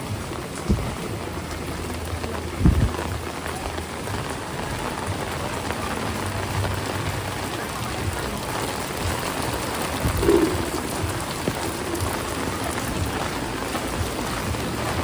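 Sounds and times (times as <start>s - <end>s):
heavy rain pattering: 0.0s - 15.0s.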